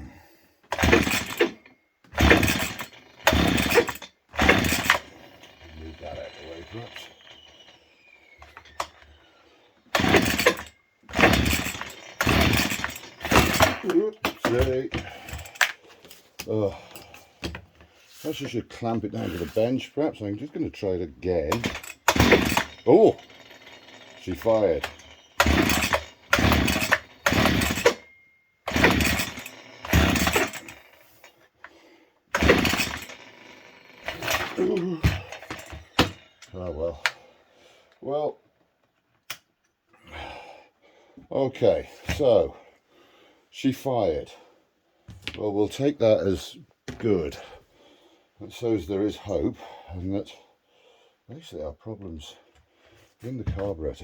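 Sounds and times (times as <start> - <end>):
strimmer engine pull-starting: 0.7 - 17.3, 18.3 - 37.3.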